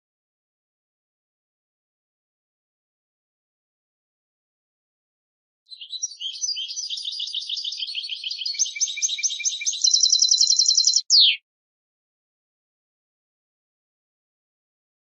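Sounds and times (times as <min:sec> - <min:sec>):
goldfinch singing: 0:05.7 - 0:11.4.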